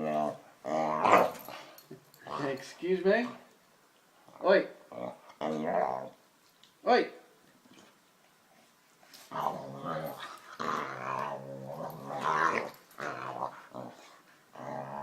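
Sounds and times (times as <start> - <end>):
dog growling: 0.0 - 2.6, 4.2 - 6.2, 9.3 - 15.0.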